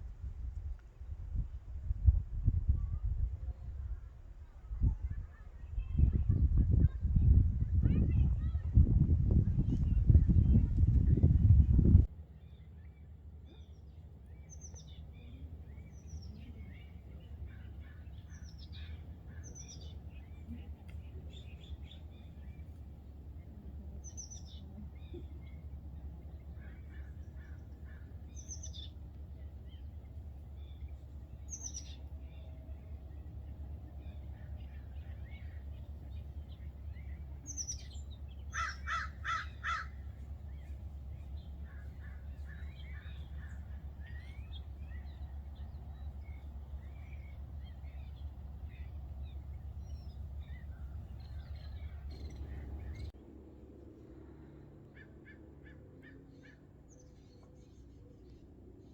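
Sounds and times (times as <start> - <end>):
low rumble: 0.0 - 54.9
birds chirping: 9.6 - 53.2
high down-sweeping bird calls: 12.3 - 53.1
loud harsh bird calls: 24.0 - 33.4, 34.0 - 53.1.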